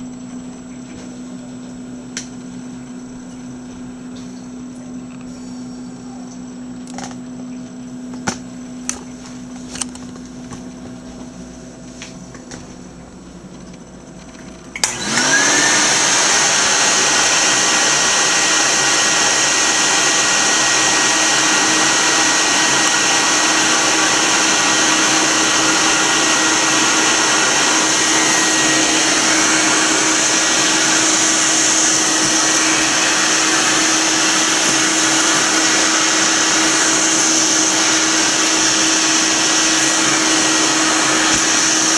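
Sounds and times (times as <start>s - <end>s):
vacuum cleaner motor whine: 0.0s - 41.9s
vacuum cleaner switch click: 14.8s - 15.8s.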